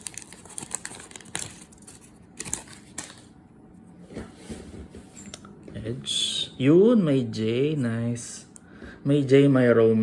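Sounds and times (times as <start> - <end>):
cards and foil wrapper rustling: 0.0 - 3.3.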